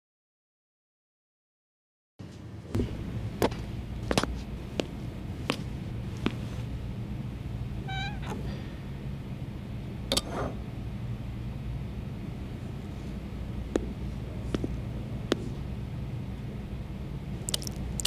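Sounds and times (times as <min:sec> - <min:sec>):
steady low hum: 0:02.8 - 0:18.0
cat meowing: 0:07.6 - 0:08.7
sharp knocks: 0:13.7 - 0:15.6.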